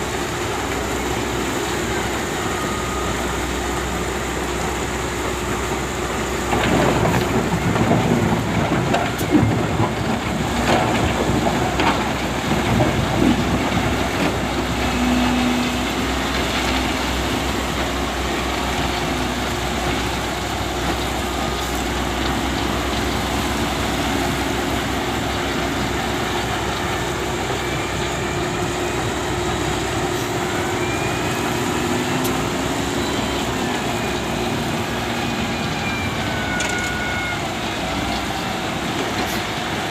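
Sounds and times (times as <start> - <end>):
diesel engine running under load: 0.0 - 39.9
heavy knocks and rumble: 6.5 - 14.6
hydraulic whine: 13.1 - 39.5.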